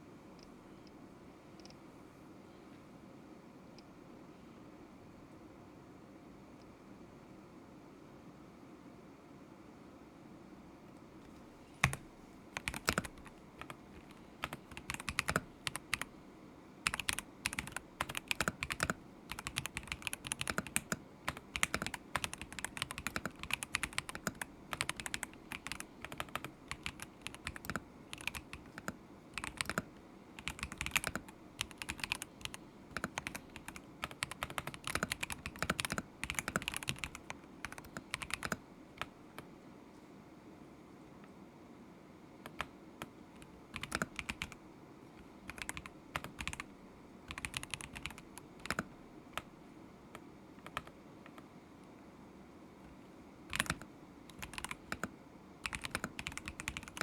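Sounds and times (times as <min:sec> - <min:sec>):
mechanical keyboard typing: 0:11.8 - 0:16.1, 0:16.8 - 0:39.5, 0:42.5 - 0:44.6, 0:45.5 - 0:46.7, 0:47.3 - 0:49.5, 0:50.1 - 0:51.4, 0:52.8 - 0:57.0.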